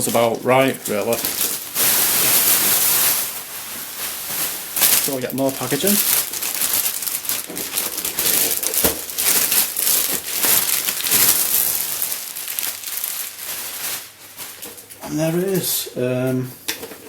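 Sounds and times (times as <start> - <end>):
packaging crinkling and rustling: 0.0 - 15.8.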